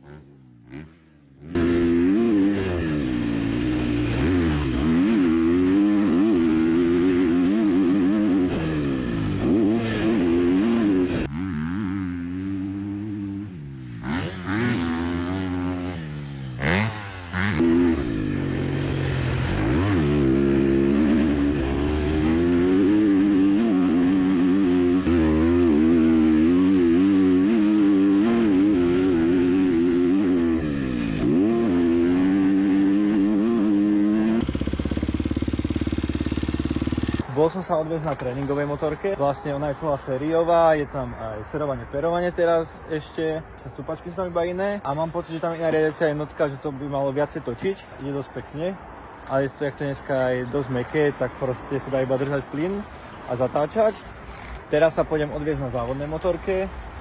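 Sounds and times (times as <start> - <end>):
motocross bike engine revving: 0.0 - 39.1.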